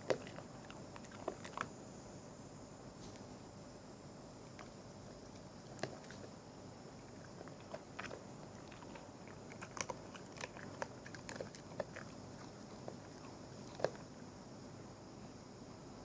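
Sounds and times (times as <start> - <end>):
small pet gnawing food: 0.0 - 1.8, 4.4 - 14.6.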